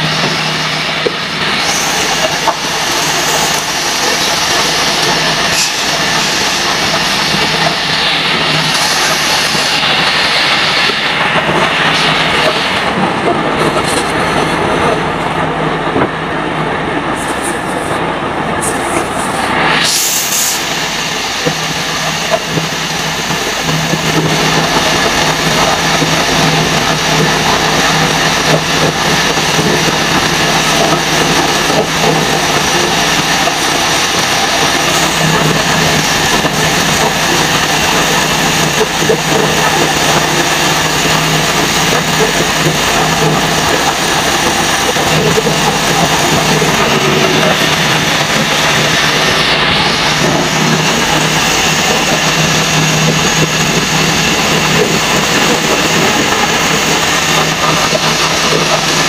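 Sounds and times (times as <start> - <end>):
hiss of wood being worked: 19.8 - 22.4.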